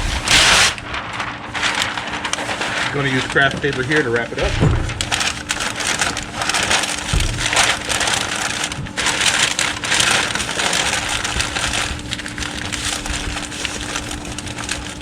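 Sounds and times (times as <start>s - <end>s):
paper crinkling and crackling: 0.0s - 15.0s.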